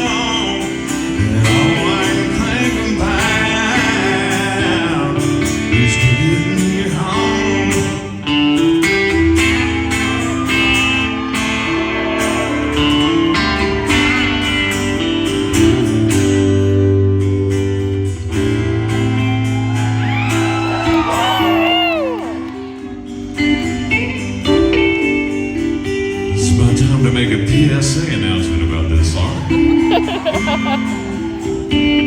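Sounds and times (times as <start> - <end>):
live country band playing: 0.0 - 32.0
sliding guitar notes: 0.0 - 32.0.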